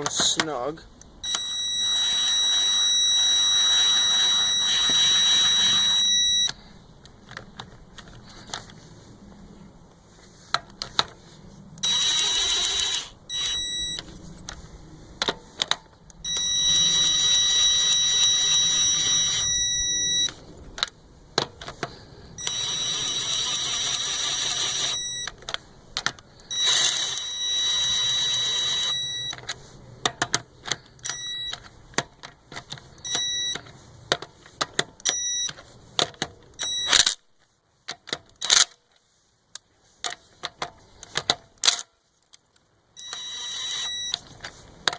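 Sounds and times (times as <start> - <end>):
impact wrench whining: 1.2 - 6.6, 11.8 - 14.1, 16.3 - 20.4, 21.8 - 25.4, 26.4 - 29.4, 43.0 - 44.3.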